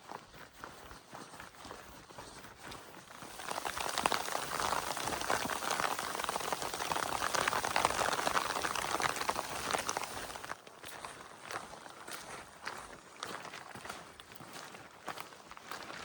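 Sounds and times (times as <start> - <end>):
rain pattering: 3.1 - 10.6.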